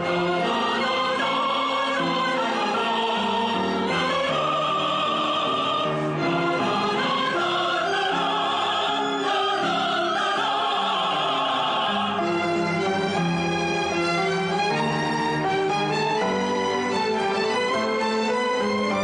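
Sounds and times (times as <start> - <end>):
choir singing: 0.0 - 13.4
orchestral accompaniment: 0.0 - 19.0.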